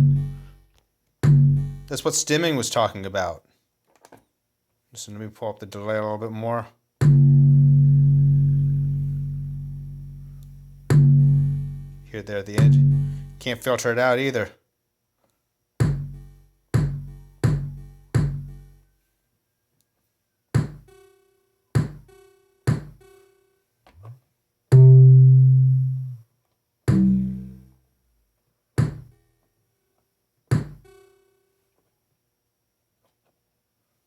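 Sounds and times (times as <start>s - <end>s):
synthesized kick drum hits: 0.0s - 0.5s, 1.2s - 2.0s, 7.0s - 10.0s, 10.7s - 13.4s, 15.8s - 18.7s, 20.6s - 20.9s, 21.8s - 22.1s, 22.7s - 23.0s, 26.9s - 27.6s, 28.8s - 29.1s, 30.5s - 30.9s
buzzy synth bass note: 0.0s - 0.6s, 1.2s - 2.0s, 7.0s - 13.6s, 15.8s - 18.8s, 24.7s - 26.2s, 26.9s - 27.8s.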